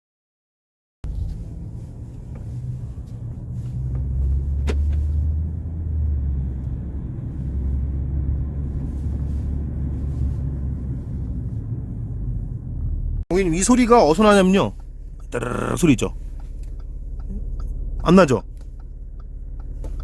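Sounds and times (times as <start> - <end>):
road rumble inside car: 1.0 - 20.0
trim ticks: 14.2 - 20.0.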